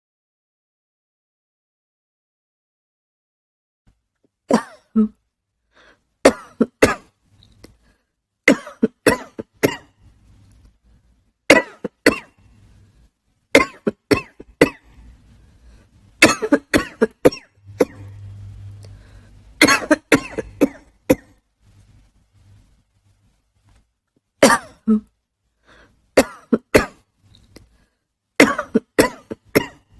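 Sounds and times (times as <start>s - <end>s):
person coughing: 4.5s - 5.2s, 6.3s - 7.1s, 8.5s - 9.9s, 11.5s - 12.4s, 13.6s - 14.9s, 16.2s - 18.2s, 19.6s - 21.3s, 24.4s - 25.1s, 26.2s - 27.0s, 28.4s - 29.9s.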